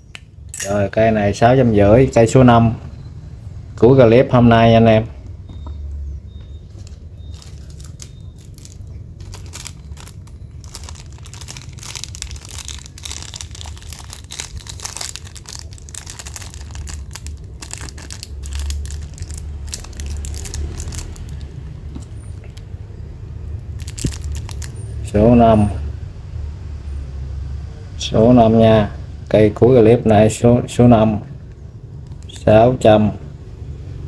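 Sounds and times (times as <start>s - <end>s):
steady low hum: 0.0s - 34.0s
packaging crinkling and rustling: 6.7s - 22.7s, 23.6s - 25.1s, 32.0s - 32.4s.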